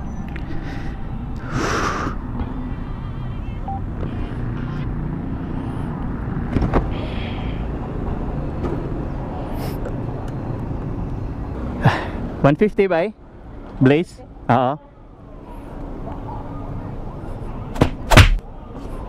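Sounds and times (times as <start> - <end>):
vehicle engine rumbling: 0.0 - 12.6.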